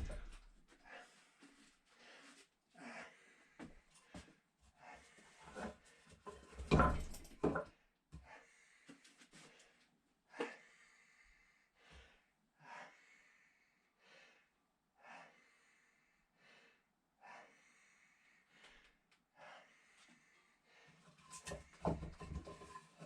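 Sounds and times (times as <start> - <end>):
man breathing hard: 0.8 - 6.1, 8.2 - 21.1.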